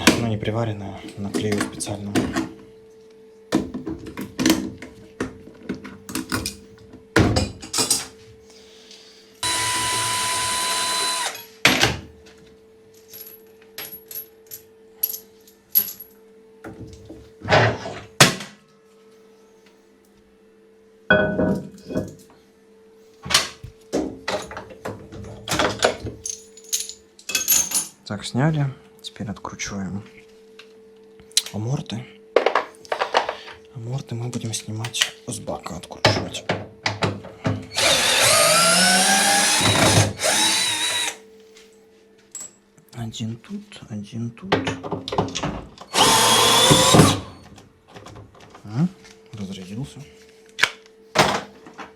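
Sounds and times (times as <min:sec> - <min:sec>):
power drill running: 0:09.4 - 0:11.5, 0:37.7 - 0:41.2, 0:45.9 - 0:47.3
tools and metal parts clicking: 0:25.6 - 0:28.0.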